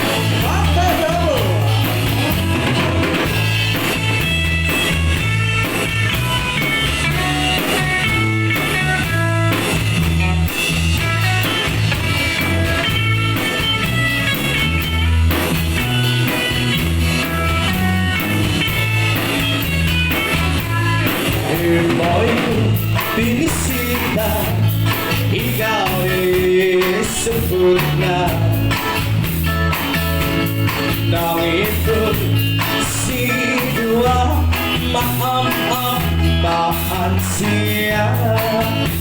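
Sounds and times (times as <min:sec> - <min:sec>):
bass guitar: 0:00.0 - 0:39.0
drum kit: 0:00.0 - 0:39.0
electric lead guitar melody: 0:00.0 - 0:39.0.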